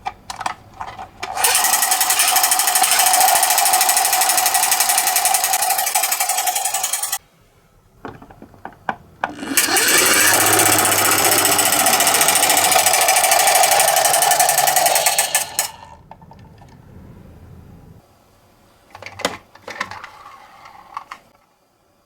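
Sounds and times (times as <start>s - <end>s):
toy car rattling down a slope: 0.0s - 7.2s, 9.3s - 16.6s, 19.0s - 21.3s.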